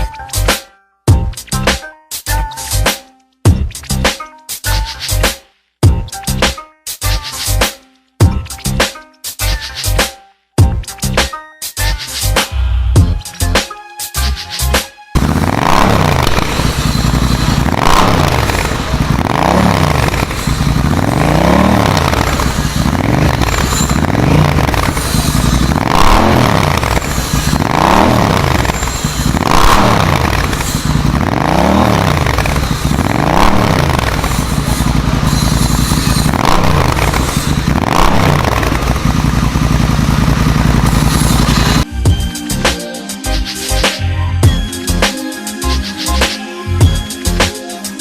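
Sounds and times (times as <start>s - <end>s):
motorcycle engine revving: 15.2s - 41.9s.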